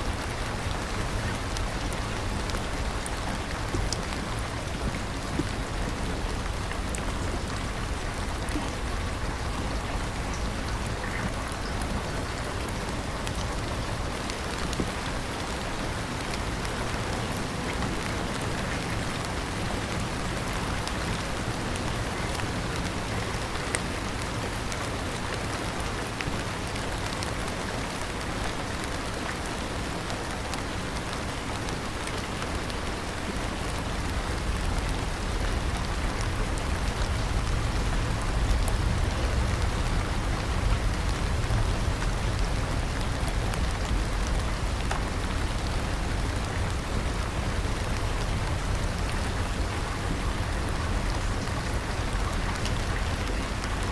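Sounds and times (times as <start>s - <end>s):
steady rain falling: 0.0s - 53.9s
low rumble: 34.0s - 53.2s.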